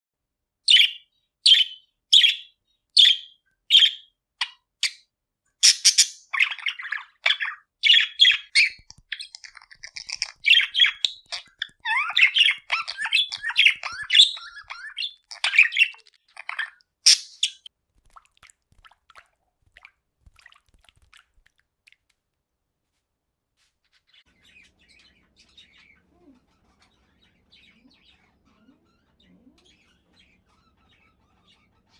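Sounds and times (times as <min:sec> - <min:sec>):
budgerigars chirping and warbling: 0:00.7 - 0:05.0, 0:05.6 - 0:17.7, 0:23.9 - 0:31.9.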